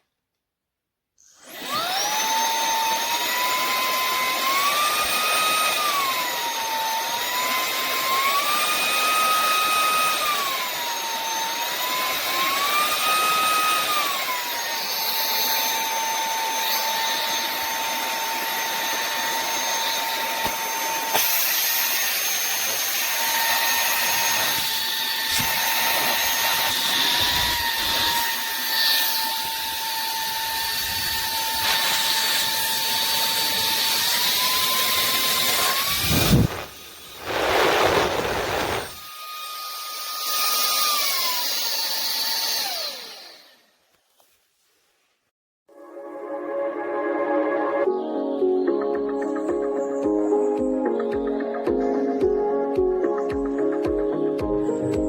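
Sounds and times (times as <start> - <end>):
handheld vacuum cleaner whine: 1.2 - 43.9.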